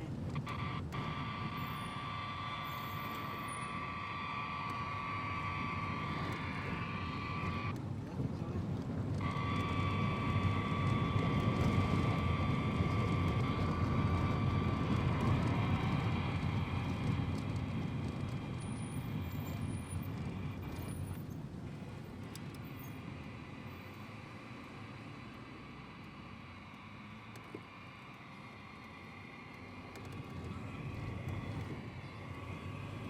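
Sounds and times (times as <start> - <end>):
high whine: 0.0 - 7.8
low engine-like rumble: 0.0 - 33.0.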